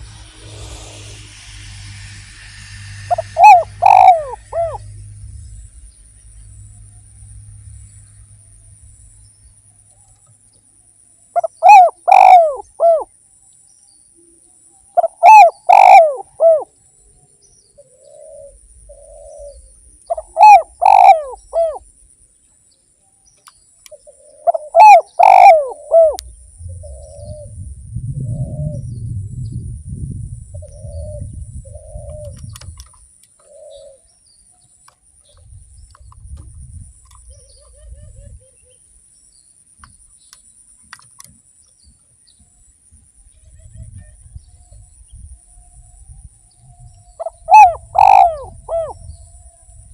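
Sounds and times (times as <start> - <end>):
low rumble: 0.0 - 9.6, 26.2 - 32.8
dove cooing: 3.1 - 4.9, 11.4 - 13.1, 15.0 - 16.7, 17.8 - 21.8, 24.0 - 27.6, 30.6 - 32.8, 33.4 - 34.1, 47.2 - 49.1.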